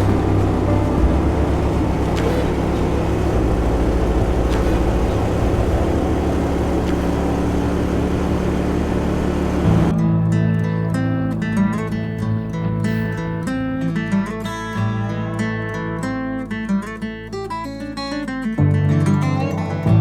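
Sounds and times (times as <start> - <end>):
boat motor running: 0.0 - 9.9
rushing noise: 0.0 - 9.9
acoustic guitar music: 0.0 - 20.0.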